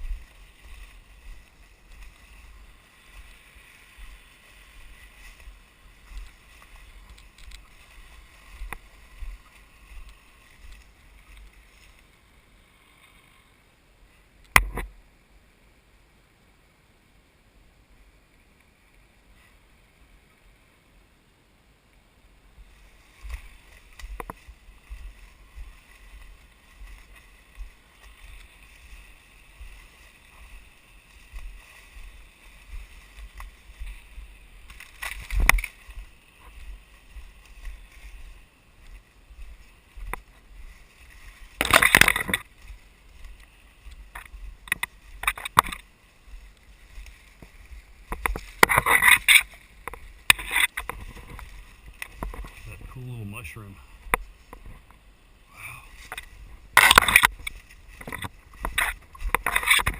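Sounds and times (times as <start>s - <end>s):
twigs crackling: 0.2s - 12.2s, 23.1s - 53.0s, 55.8s - 59.9s.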